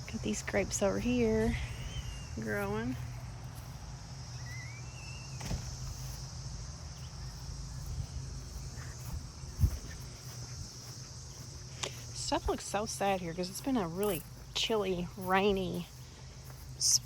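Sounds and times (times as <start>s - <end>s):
insect chorus: 0.0s - 17.0s
short rising chirp: 4.3s - 6.0s
sharp thump: 5.4s - 6.0s.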